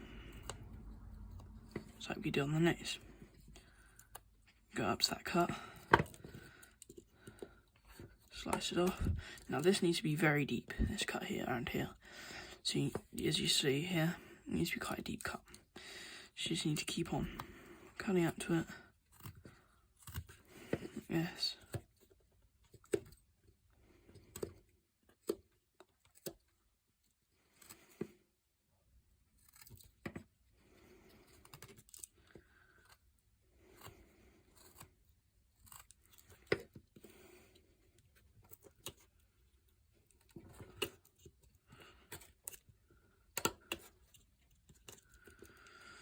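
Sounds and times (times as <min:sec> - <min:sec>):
knife slicing and scraping wood: 0:29.2 - 0:30.3, 0:31.1 - 0:37.6.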